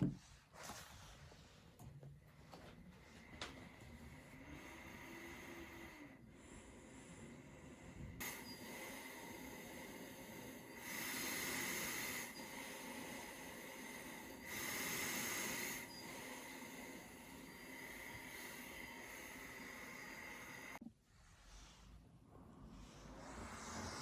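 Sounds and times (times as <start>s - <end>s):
airy hiss of breathing machine: 4.1s - 20.8s, 22.8s - 24.0s.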